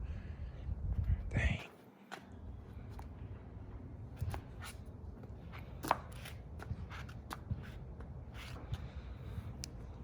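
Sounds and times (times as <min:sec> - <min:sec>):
low steady rumble: 0:00.0 - 0:01.6.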